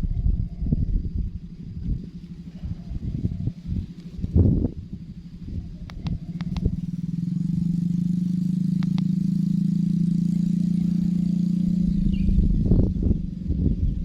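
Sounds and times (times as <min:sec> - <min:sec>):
small engine running: 0:00.0 - 0:14.0
sharp clicks: 0:05.8 - 0:06.9, 0:08.7 - 0:09.2.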